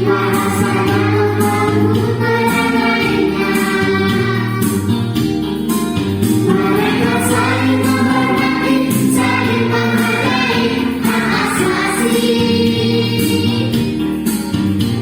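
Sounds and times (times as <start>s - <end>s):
choir singing with accompaniment: 0.0s - 14.5s.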